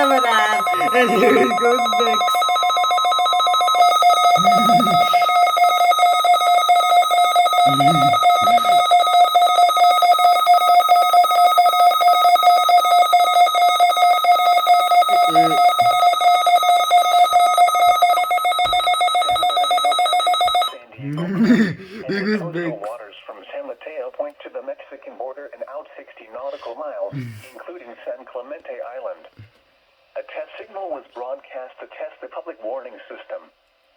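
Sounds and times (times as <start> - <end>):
rapid trilling alarm tone: 0.0 - 20.8.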